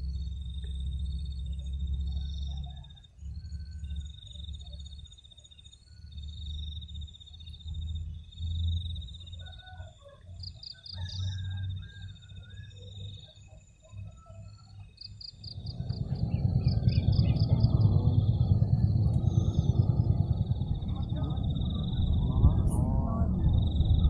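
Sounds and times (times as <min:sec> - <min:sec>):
insects trilling: 0:00.0 - 0:24.0
low rumble: 0:15.3 - 0:24.0.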